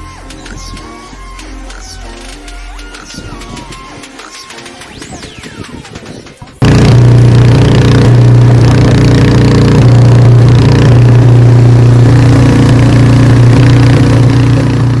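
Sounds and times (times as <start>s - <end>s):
engine running steadily: 6.6s - 15.0s.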